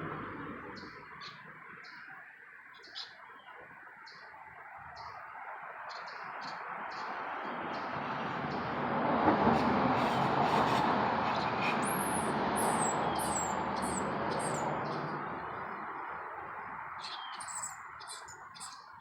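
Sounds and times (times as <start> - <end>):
small bird chirping: 11.4 - 15.1, 17.0 - 19.0.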